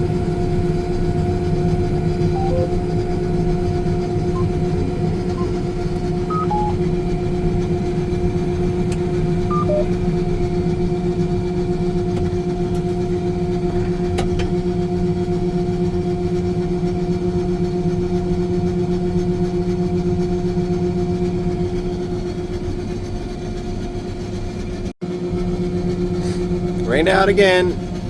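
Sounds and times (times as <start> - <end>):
combine harvester humming: 0.0 - 11.8
faint short beeps: 2.4 - 2.8, 6.3 - 6.8, 9.5 - 9.9.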